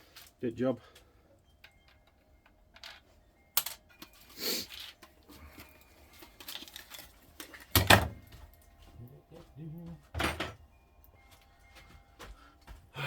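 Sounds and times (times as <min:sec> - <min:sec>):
small objects clicking and knocking: 0:01.6 - 0:08.7.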